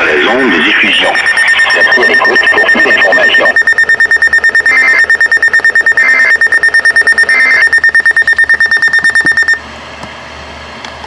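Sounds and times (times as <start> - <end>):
emergency alert tone beeping: 0.8 - 9.6.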